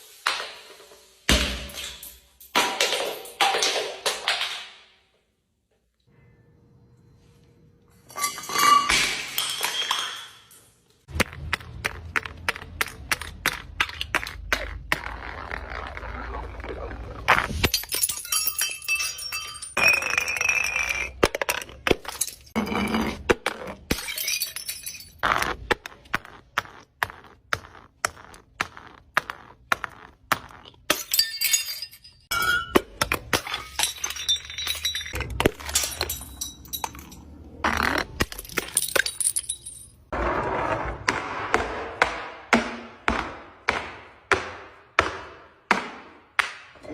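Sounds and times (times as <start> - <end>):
glass shards clinking: 8.1 - 10.7, 17.7 - 21.2, 33.4 - 37.4
glass breaking and crunching: 17.4 - 25.5, 30.5 - 40.1.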